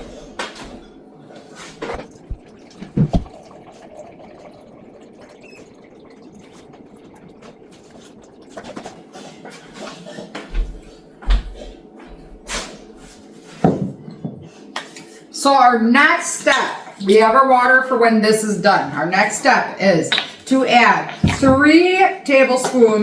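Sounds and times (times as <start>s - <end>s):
tap water running into cup: 1.8s - 10.0s, 21.1s - 21.8s
cup and kitchen items knocking: 21.2s - 21.7s.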